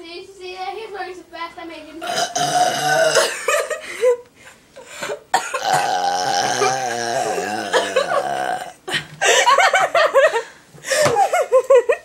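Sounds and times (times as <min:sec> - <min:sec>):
long drawn-out burp: 0:02.0 - 0:03.4, 0:05.3 - 0:08.8.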